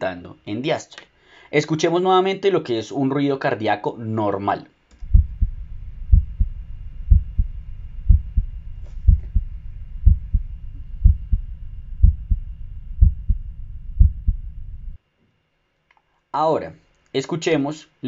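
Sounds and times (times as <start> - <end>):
low background noise: 0.0 - 18.0
heartbeat lub-dub: 5.0 - 15.0.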